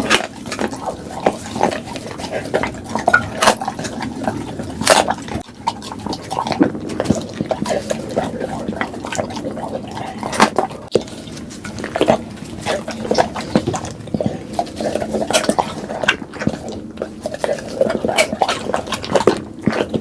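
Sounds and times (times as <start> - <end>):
dog chewing food: 0.0 - 20.0.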